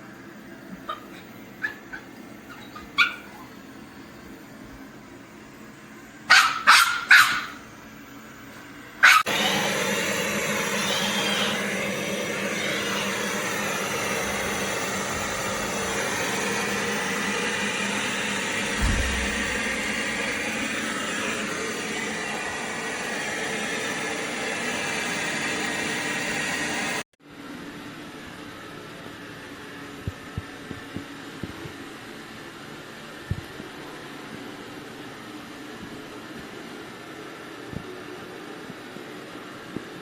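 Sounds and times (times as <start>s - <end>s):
mechanical whirring hum: 0.0s - 40.0s
dog barking: 0.9s - 3.5s, 6.3s - 7.6s, 9.0s - 9.3s.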